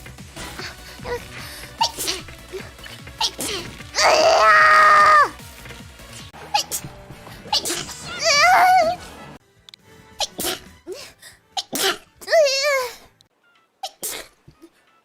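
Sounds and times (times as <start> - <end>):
woman sneezing: 1.8 - 2.3, 6.5 - 6.9, 10.2 - 12.1, 13.8 - 14.4.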